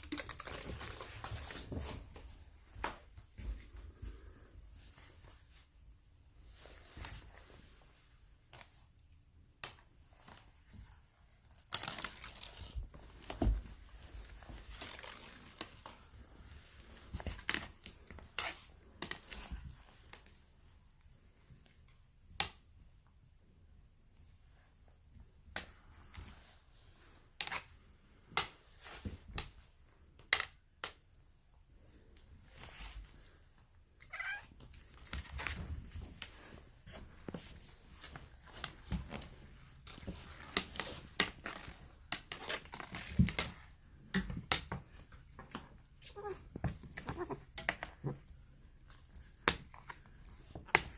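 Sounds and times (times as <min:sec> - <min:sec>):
cat meowing: 0:34.0 - 0:34.6.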